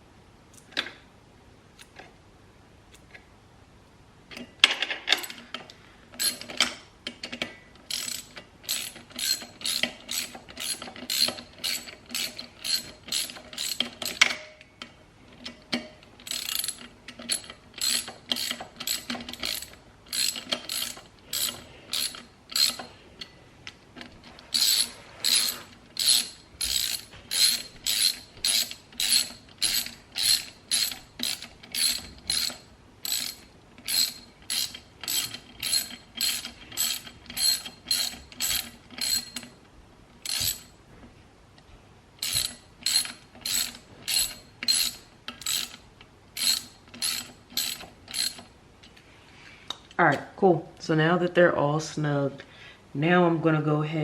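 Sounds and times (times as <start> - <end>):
socket ratchet clicking: 6.2 - 14.4, 15.7 - 22.9, 24.5 - 39.5, 40.2 - 40.7, 42.2 - 45.8, 46.4 - 48.5.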